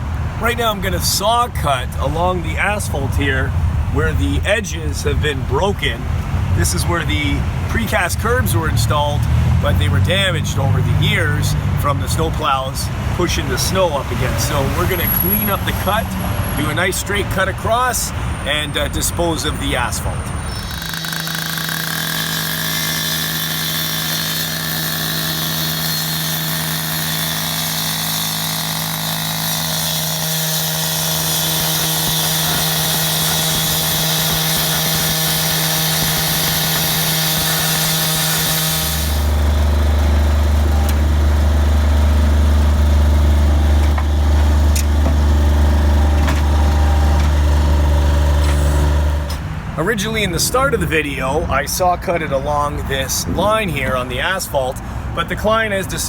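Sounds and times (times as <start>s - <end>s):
engine drone: 2.9s - 51.7s
saw grinding through asphalt: 6.6s - 49.4s.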